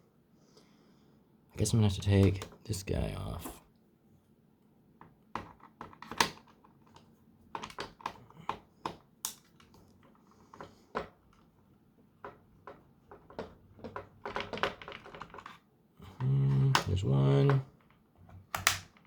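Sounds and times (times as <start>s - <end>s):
plastic parts clicking and tapping: 5.0s - 11.6s, 12.2s - 19.0s.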